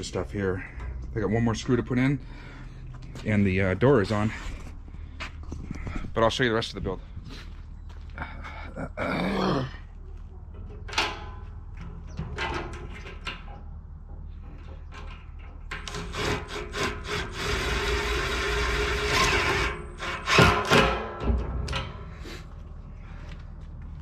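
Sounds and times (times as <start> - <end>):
power tool running: 15.8 - 20.4.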